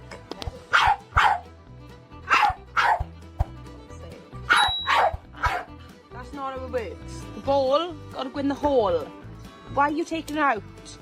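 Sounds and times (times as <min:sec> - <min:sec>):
background music: 0:00.0 - 0:11.0
dog barking: 0:00.7 - 0:01.5, 0:02.3 - 0:03.1, 0:04.5 - 0:05.8.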